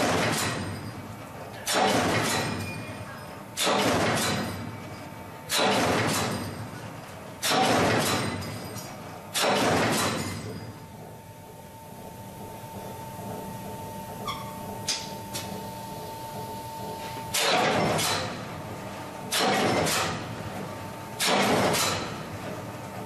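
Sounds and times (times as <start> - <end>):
punch press hitting steel sheet: 0.0 - 0.9, 1.6 - 3.0, 3.6 - 4.8, 5.5 - 6.8, 7.4 - 8.7, 9.3 - 10.6, 17.3 - 18.5, 19.3 - 20.4, 21.2 - 22.3.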